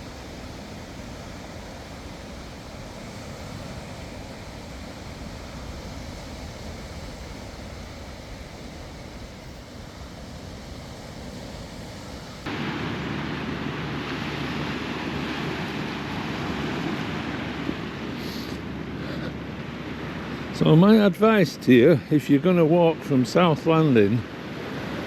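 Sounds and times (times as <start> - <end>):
wind on microphone: 0.0 - 12.5
sea surf: 0.0 - 25.0
wind: 0.0 - 25.0.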